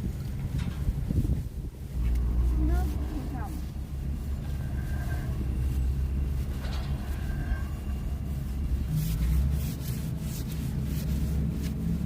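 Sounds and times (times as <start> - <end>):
boat engine running: 1.8 - 12.0.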